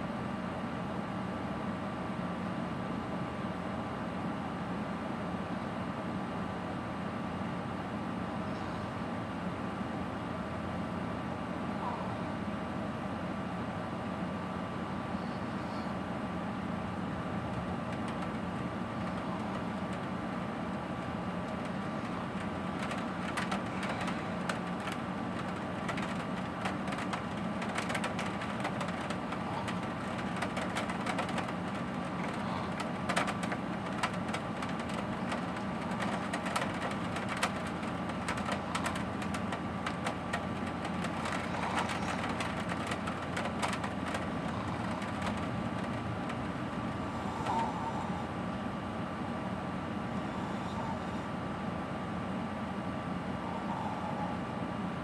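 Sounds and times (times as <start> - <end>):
sharp raindrop taps: 17.5 - 46.7
steady rain: 17.6 - 46.7.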